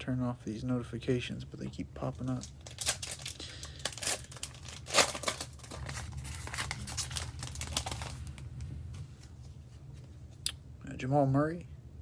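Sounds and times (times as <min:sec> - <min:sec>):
plastic wrapper tearing and crinkling: 0:02.2 - 0:08.7.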